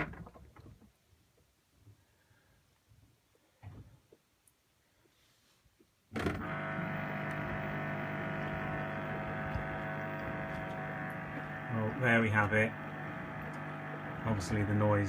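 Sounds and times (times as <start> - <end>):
washing machine electrical buzz: 6.1 - 15.0.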